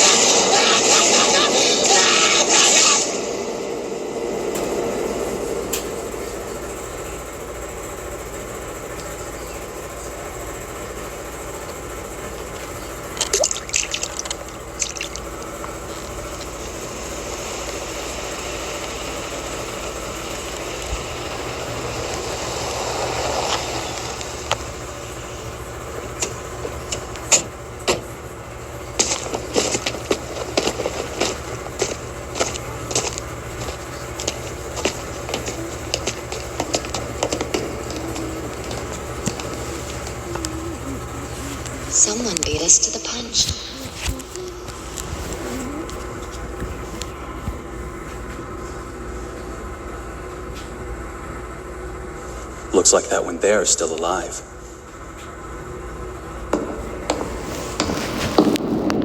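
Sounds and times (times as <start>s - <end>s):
sharp wet clicks: 13.2s - 15.4s.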